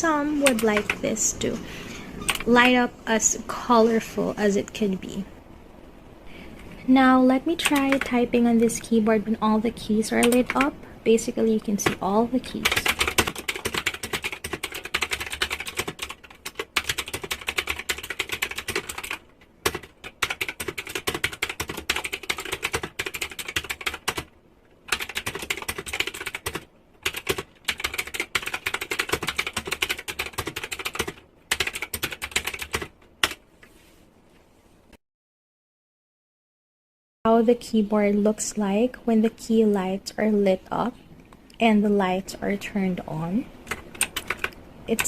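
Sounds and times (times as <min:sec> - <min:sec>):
mechanical keyboard typing: 0:00.1 - 0:01.0, 0:07.6 - 0:08.2, 0:10.1 - 0:10.7, 0:11.8 - 0:24.3, 0:24.9 - 0:33.4, 0:43.6 - 0:45.0.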